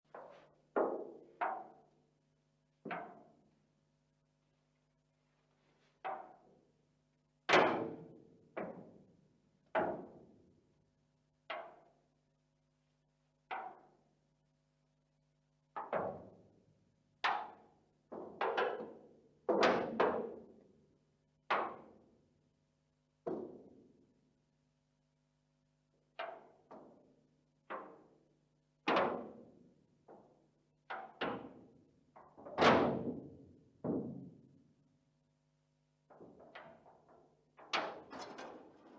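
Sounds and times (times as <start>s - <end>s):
corrugated iron popping and banging: 36.2s - 38.9s.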